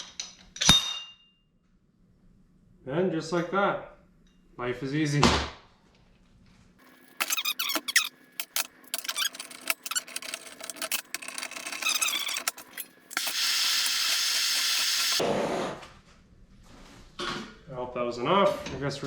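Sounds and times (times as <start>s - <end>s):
loud steady hiss: 13.2s - 15.2s.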